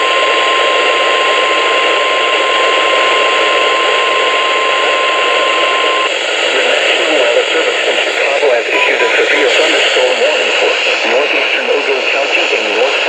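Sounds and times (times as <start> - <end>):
steady alarm beep: 0.0 - 6.1
loud radio static: 0.0 - 13.0.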